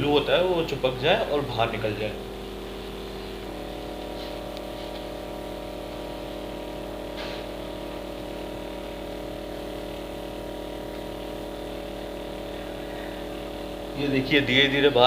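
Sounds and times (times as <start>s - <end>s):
machine humming: 0.0s - 15.0s
brief scrape: 7.2s - 7.5s.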